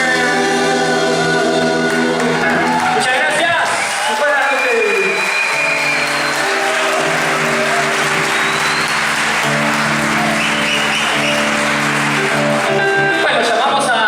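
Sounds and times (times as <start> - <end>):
live band music: 0.0 - 14.0
audience applause and cheering: 1.2 - 14.0.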